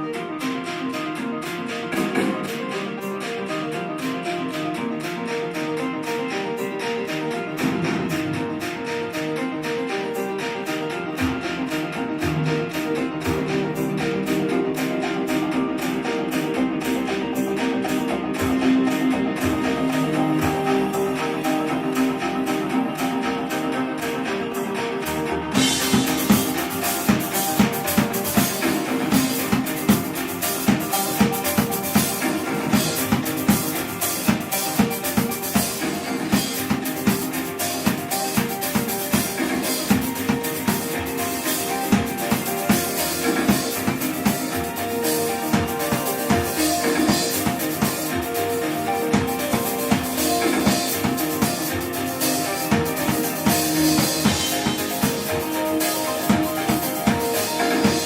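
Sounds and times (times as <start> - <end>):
distorted guitar chords: 0.0 - 58.0
live band playing: 0.4 - 58.0
bass drum and snare beat: 25.5 - 58.0.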